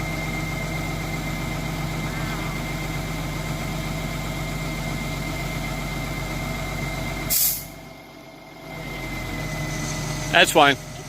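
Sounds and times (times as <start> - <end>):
engine idling: 0.0 - 11.0
short sharp hiss: 7.3 - 7.8.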